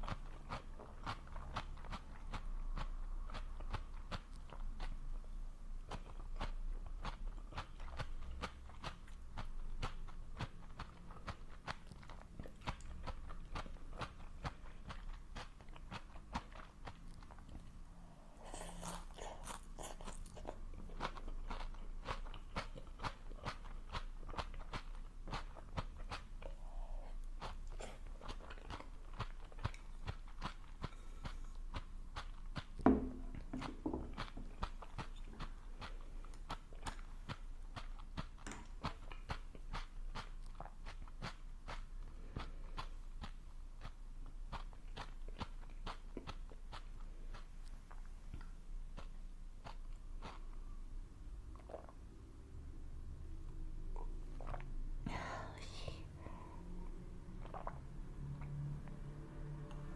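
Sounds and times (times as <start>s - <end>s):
chewing and biting food: 0.0s - 50.8s, 51.5s - 52.1s, 53.5s - 54.9s, 56.2s - 59.9s
loud knock: 32.8s - 34.1s.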